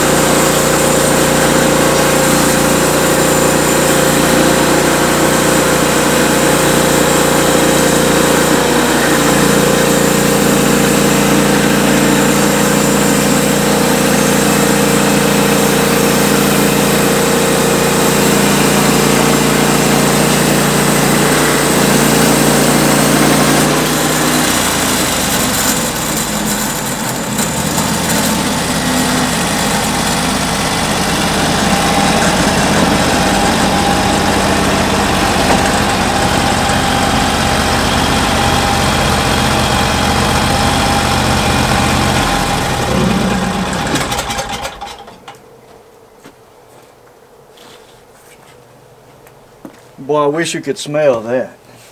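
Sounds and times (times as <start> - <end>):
saw blade hissing through wood: 0.0 - 39.4
sawmill engine running: 0.0 - 45.4.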